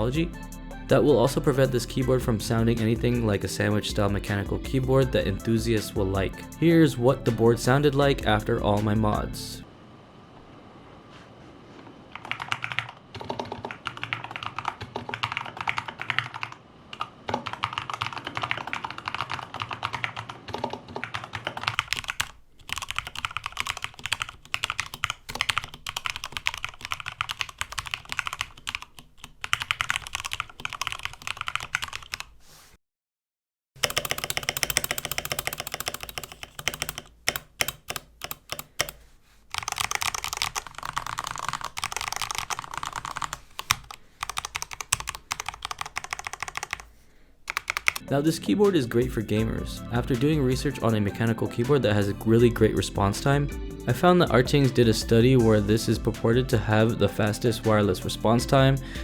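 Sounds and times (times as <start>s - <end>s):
fast mechanical keyboard typing: 12.1s - 32.4s, 33.8s - 46.9s, 47.5s - 48.1s.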